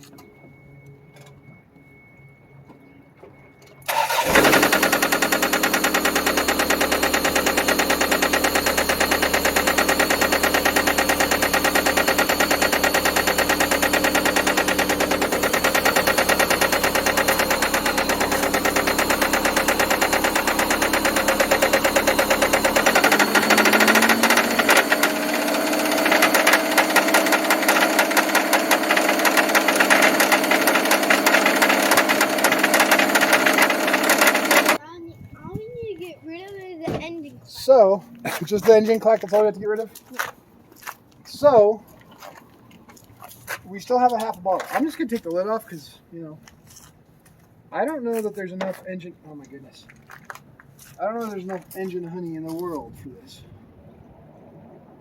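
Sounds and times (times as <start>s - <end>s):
engine cranking and starting: 3.8s - 34.9s.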